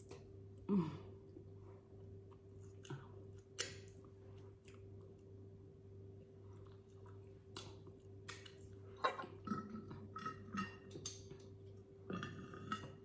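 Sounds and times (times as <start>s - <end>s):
faint steady hum: 0.0s - 13.0s
chewing: 2.3s - 5.3s, 6.4s - 11.5s.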